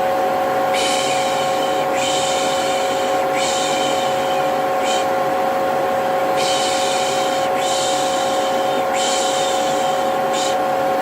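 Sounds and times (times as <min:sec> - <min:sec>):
vacuum cleaner motor humming: 0:00.0 - 0:11.0.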